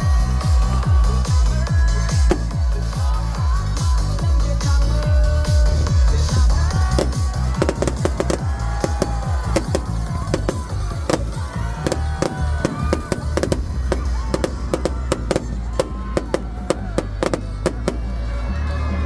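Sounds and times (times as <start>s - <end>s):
loud music with heavy bass: 0.0s - 19.0s
fireworks bangs: 2.2s - 3.2s, 6.1s - 18.5s.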